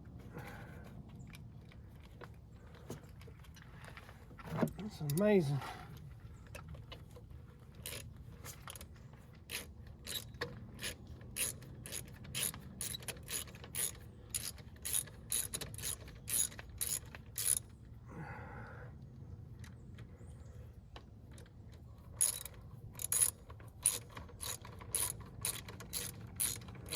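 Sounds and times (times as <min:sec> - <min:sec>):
ratchet wrench clicking: 0:07.8 - 0:08.0, 0:09.5 - 0:17.6, 0:22.2 - 0:26.9.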